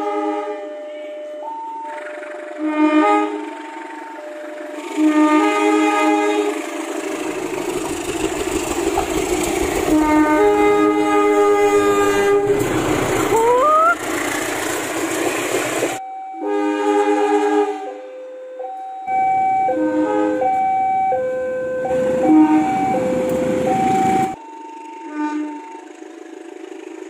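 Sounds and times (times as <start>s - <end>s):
locomotive air horns: 0.0s - 14.6s, 16.4s - 18.1s, 19.7s - 20.7s, 21.8s - 26.4s
train running noise: 0.0s - 16.0s, 21.8s - 27.0s.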